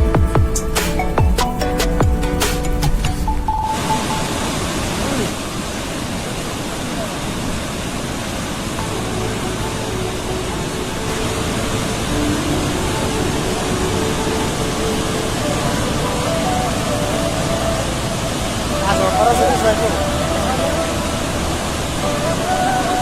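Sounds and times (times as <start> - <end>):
steady rushing noise: 0.0 - 23.0
faint voices: 8.8 - 23.0.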